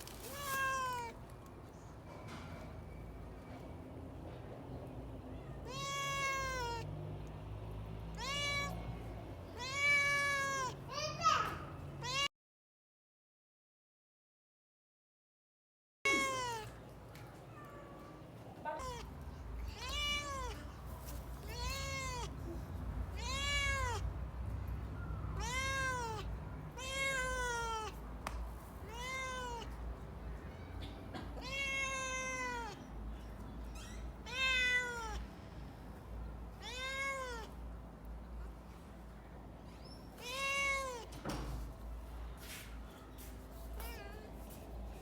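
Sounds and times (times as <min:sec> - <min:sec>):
cat meowing: 0:00.1 - 0:01.2, 0:05.3 - 0:07.0, 0:08.1 - 0:11.4, 0:12.0 - 0:12.3, 0:16.1 - 0:16.8, 0:18.6 - 0:24.2, 0:25.0 - 0:28.0, 0:28.8 - 0:29.8, 0:31.4 - 0:32.9, 0:33.8 - 0:35.3, 0:36.5 - 0:37.6, 0:40.1 - 0:41.2.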